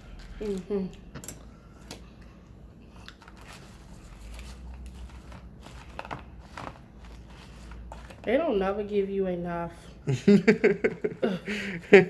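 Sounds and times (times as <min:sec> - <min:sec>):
plastic packaging crinkling: 0:03.1 - 0:08.4.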